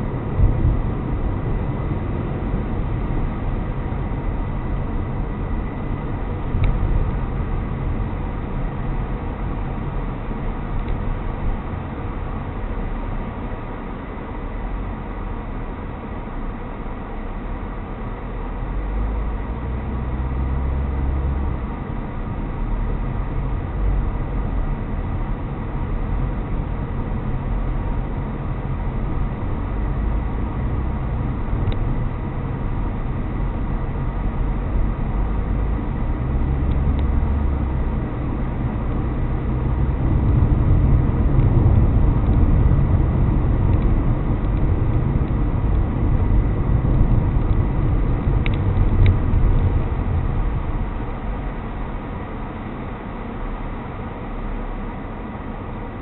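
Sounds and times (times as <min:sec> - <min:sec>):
car engine: 0:00.0 - 0:56.0
road rumble: 0:00.0 - 0:56.0.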